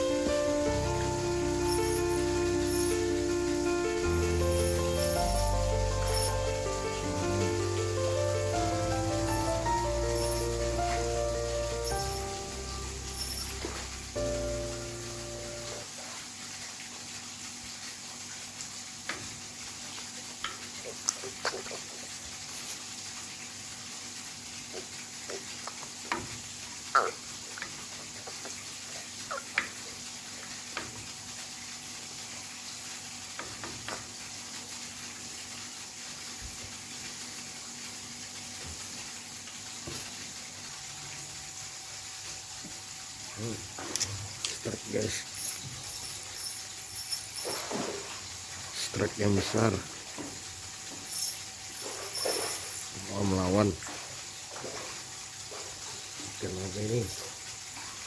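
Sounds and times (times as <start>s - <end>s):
steady high hiss: 0.0s - 16.2s, 19.7s - 54.8s, 55.4s - 57.6s.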